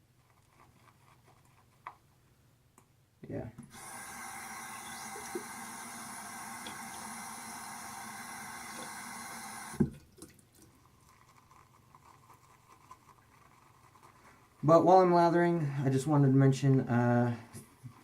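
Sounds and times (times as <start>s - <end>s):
water tap running: 3.6s - 10.1s
faint handling sounds: 10.2s - 18.0s.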